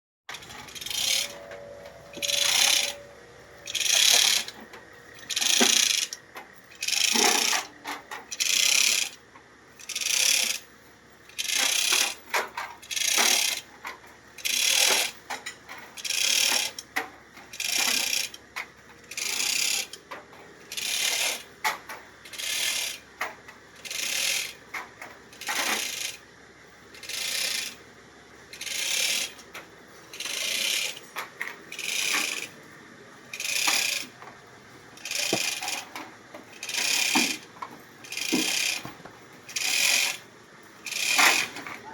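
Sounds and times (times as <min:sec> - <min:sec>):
chain hoist rattling: 0:00.3 - 0:09.2, 0:09.8 - 0:10.6, 0:11.3 - 0:13.7, 0:14.4 - 0:16.8, 0:17.4 - 0:18.4, 0:19.0 - 0:20.0, 0:20.7 - 0:23.0, 0:23.8 - 0:24.6, 0:25.3 - 0:26.2, 0:26.9 - 0:27.8, 0:28.5 - 0:32.6, 0:33.3 - 0:34.2, 0:35.0 - 0:41.9.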